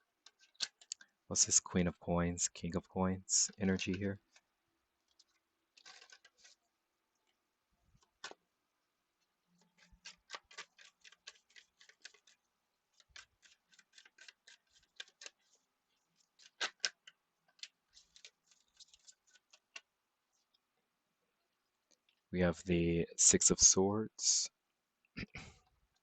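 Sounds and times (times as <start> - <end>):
cards being shuffled: 0.2 - 1.1, 5.1 - 6.6, 8.0 - 8.4, 9.6 - 19.9.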